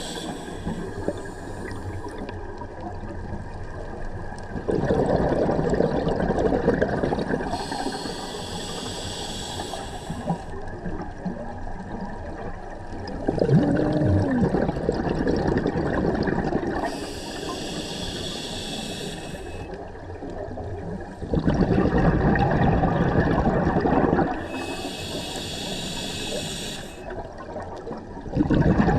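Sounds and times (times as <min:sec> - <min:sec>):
regulator inhalation hiss: 0:00.0 - 0:02.2, 0:07.5 - 0:10.6, 0:16.8 - 0:19.8, 0:24.4 - 0:27.1
bubbling exhalation: 0:04.5 - 0:08.1, 0:13.2 - 0:17.0, 0:21.3 - 0:25.7, 0:28.2 - 0:28.9.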